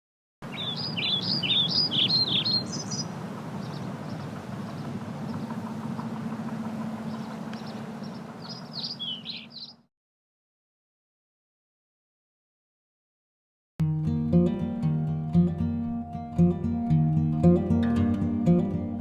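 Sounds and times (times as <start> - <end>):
songbird whistling: 0.5 - 9.9
steady low hum: 0.8 - 9.6.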